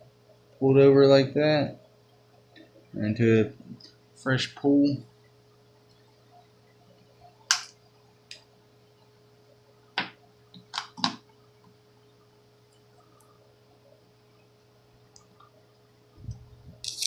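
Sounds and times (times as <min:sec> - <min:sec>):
faint steady hum: 0:00.0 - 0:17.0
sharp clicks and pops: 0:07.5 - 0:08.4.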